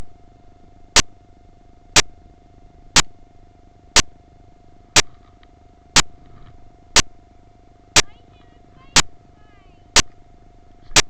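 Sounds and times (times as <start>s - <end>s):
faint steady hum: 0.0s - 11.0s
sharp clicks: 3.0s - 3.2s, 8.0s - 9.1s, 10.0s - 10.2s.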